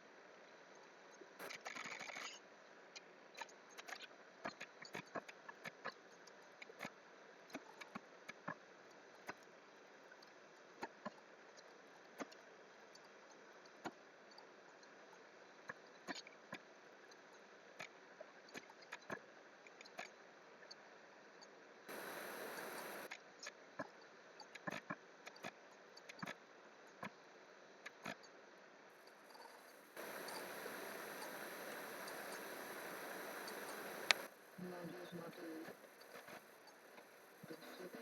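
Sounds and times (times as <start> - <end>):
faint steady hiss: 0.0 - 38.0
mouse clicks: 30.0 - 34.3.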